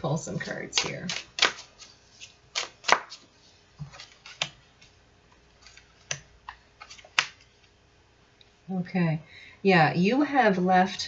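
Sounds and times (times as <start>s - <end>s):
cards snapping and slapping: 0.7s - 3.2s, 3.9s - 5.0s, 5.6s - 7.5s.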